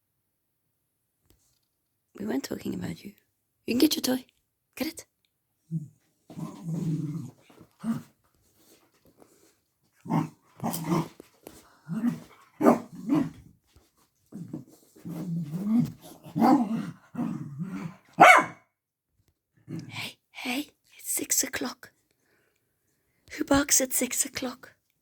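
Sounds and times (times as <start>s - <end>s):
dog growling: 5.7s - 8.2s, 10.0s - 13.5s, 14.3s - 18.5s.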